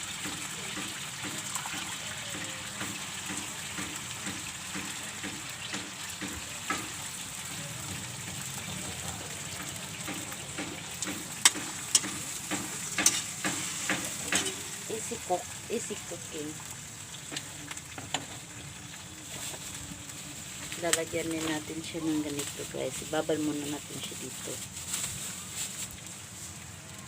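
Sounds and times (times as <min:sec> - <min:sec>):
vegetables sizzling in a pan: 0:00.0 - 0:27.0
utensil clicking against pan: 0:09.5 - 0:14.9.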